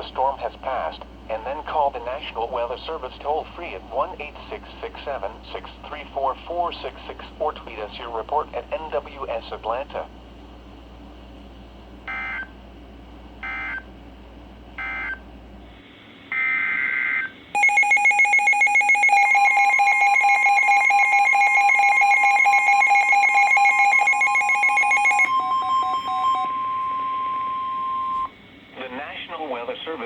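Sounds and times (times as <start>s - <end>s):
steady single-pitch alarm tone: 13.4s - 13.8s, 16.3s - 28.4s
pulsing two-tone attention signal: 17.6s - 28.3s.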